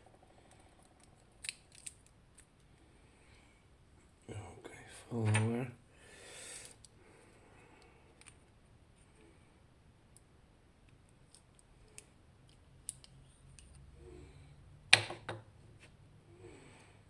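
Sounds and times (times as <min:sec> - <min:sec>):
small metal lock parts clicking: 0:00.4 - 0:02.7, 0:11.2 - 0:13.8.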